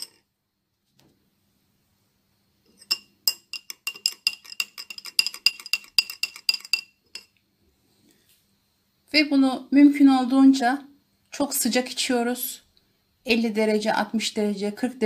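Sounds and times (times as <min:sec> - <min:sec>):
spoon clinking against vessel: 0:00.0 - 0:00.2, 0:02.7 - 0:07.3.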